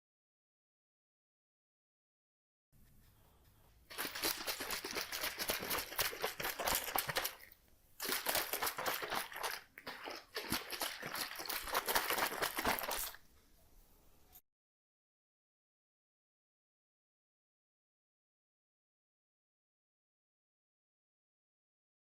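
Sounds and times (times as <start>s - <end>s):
water sloshing in shaken bottle: 3.9s - 13.3s.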